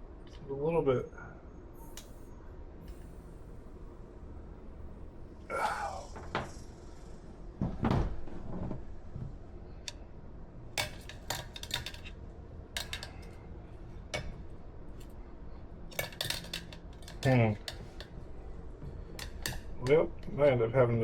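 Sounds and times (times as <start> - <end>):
short loud vocal sound: 5.5 - 6.2.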